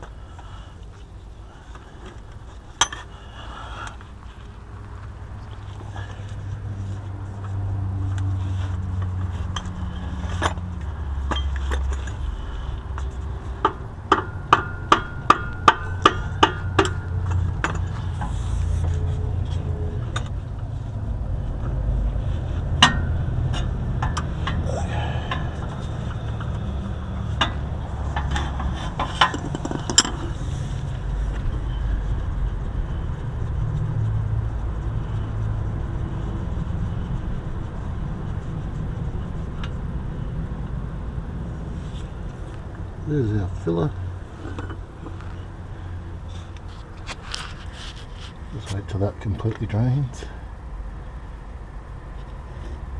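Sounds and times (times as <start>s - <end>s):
steady low rumble: 0.0s - 52.9s
hand tools knocking on metal: 13.7s - 17.0s.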